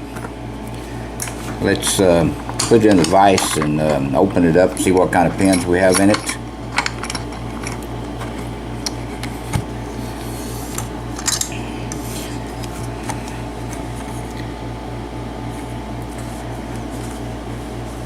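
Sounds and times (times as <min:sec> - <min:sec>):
low pulsing hum: 0:00.0 - 0:18.0
metallic clicks and clinks: 0:05.4 - 0:07.8.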